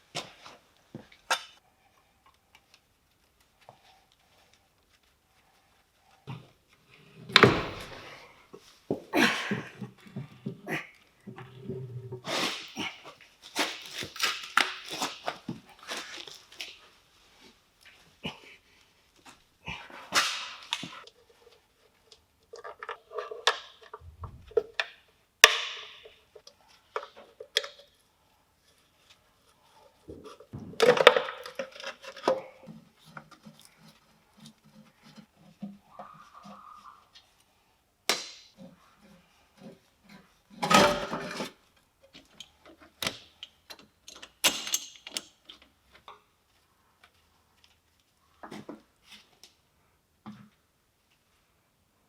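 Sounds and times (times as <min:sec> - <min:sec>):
tools and metal parts clinking: 0:42.2 - 0:45.7.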